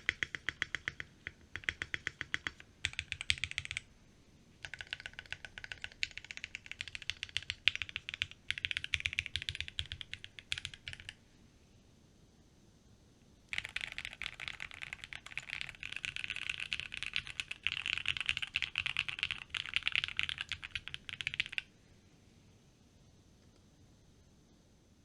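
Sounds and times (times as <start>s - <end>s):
fast mechanical keyboard typing: 0.0s - 3.8s, 4.6s - 11.2s, 13.5s - 21.7s.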